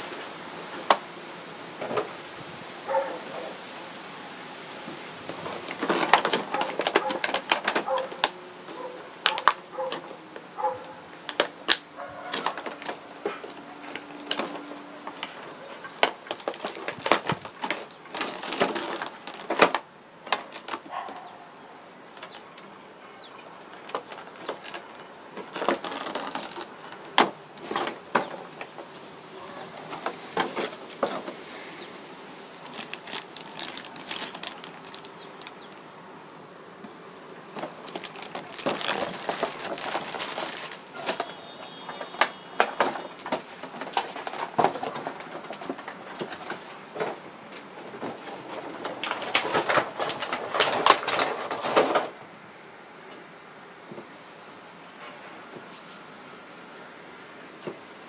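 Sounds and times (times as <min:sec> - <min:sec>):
packaging rustling and crinkling: 0:04.8 - 0:21.3, 0:23.6 - 0:35.9, 0:37.5 - 0:52.2.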